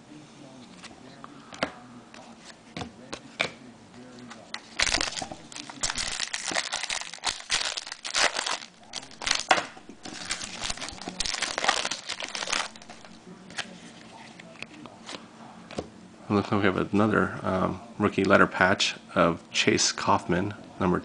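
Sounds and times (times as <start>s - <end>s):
card pack wrapper crinkling: 4.5s - 13.7s.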